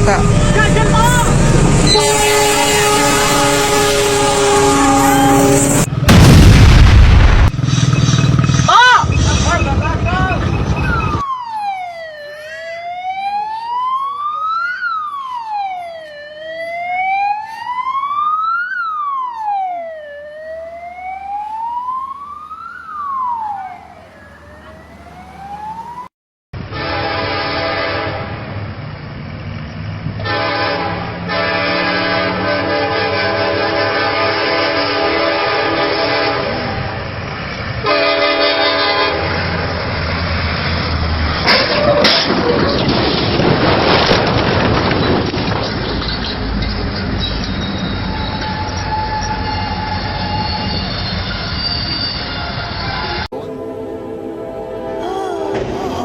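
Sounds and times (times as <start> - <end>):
wailing siren: 0.0 - 5.9, 8.8 - 26.1, 48.0 - 56.0
train horn multi-tone blast: 1.7 - 5.9, 26.6 - 28.5, 30.2 - 37.1, 37.8 - 39.7, 48.1 - 56.0.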